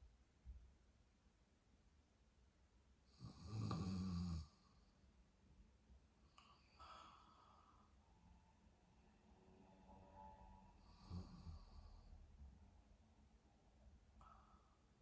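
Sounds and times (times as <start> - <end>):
woman snoring: 3.2 - 4.6, 10.8 - 11.9
faint breathing: 6.3 - 8.7, 10.3 - 12.3, 14.2 - 15.0.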